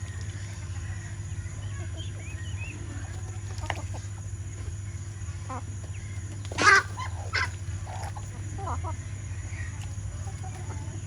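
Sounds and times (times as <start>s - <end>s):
chickens clucking: 0.0s - 11.0s
steady low hum: 0.0s - 11.0s
chicken squawk: 5.4s - 11.0s.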